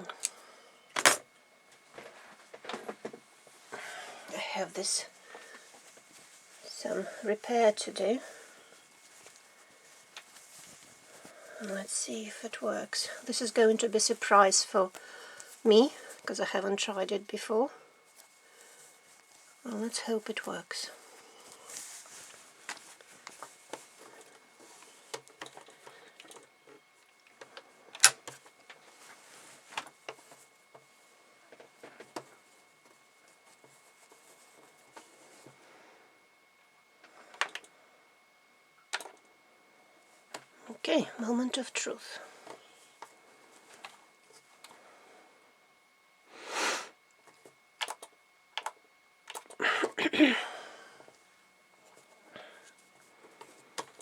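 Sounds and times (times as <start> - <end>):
fabric rustling: 5.0 - 16.4, 18.0 - 26.2.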